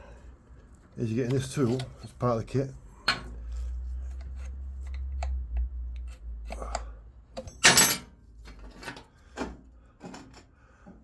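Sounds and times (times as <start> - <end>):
metal tools scraping clatter: 1.1 - 2.3
metal tools clinking and rattling: 7.4 - 9.1.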